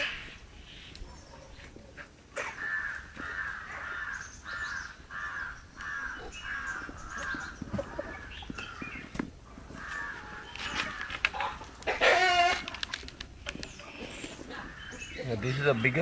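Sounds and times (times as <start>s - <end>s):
bird cawing: 2.4s - 9.1s, 9.7s - 12.8s.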